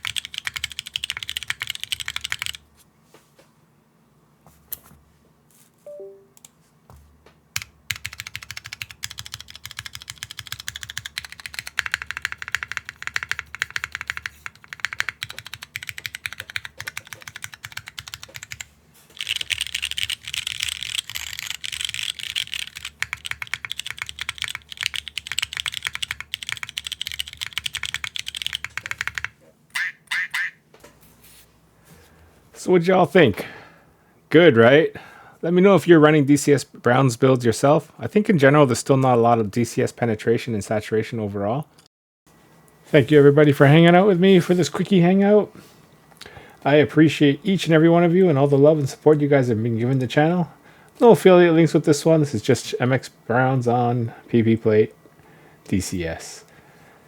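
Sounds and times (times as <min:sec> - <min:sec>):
mechanical keyboard typing: 0:00.0 - 0:02.6, 0:07.6 - 0:29.3.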